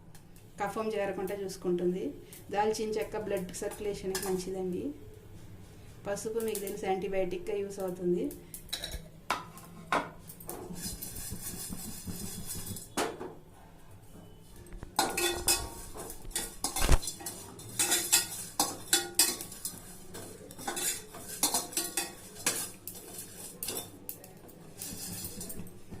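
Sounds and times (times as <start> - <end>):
spoon scraping spices in pan: 8.8 - 13.0, 14.2 - 26.0
spoon clinking against pan: 15.0 - 22.8.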